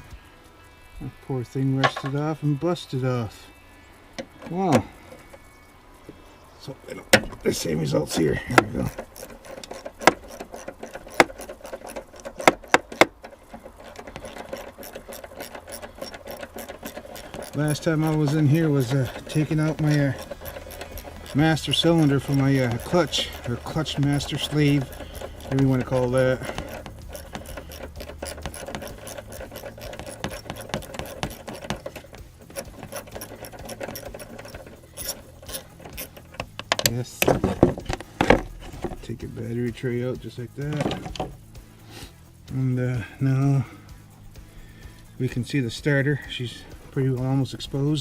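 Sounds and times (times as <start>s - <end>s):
sharp metal clinks: 0.0s - 48.0s
wrench clicking on metal: 6.9s - 45.6s.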